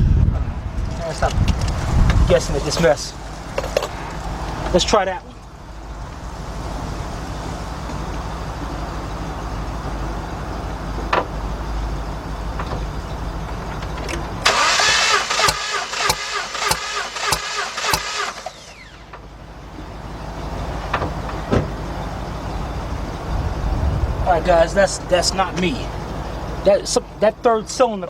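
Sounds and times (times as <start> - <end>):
steady low rumble: 0.0 - 20.4, 21.8 - 27.2
engine cranking on starter: 14.1 - 19.2.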